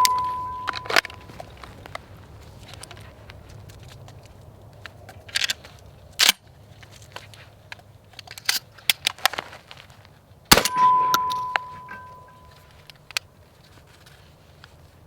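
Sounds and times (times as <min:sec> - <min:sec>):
metallic ring: 0:00.0 - 0:01.4, 0:10.5 - 0:12.7
sharp cracks and knocks: 0:02.6 - 0:13.3
gunshot: 0:10.5 - 0:11.8.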